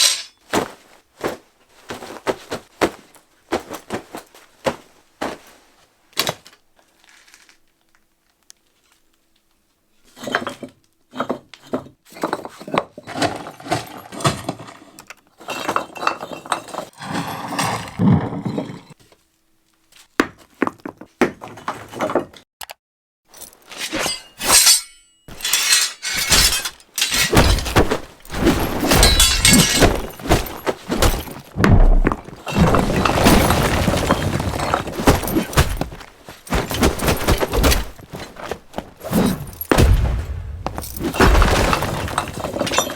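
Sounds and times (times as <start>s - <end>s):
props cracking and crunching: 25.4s - 42.9s.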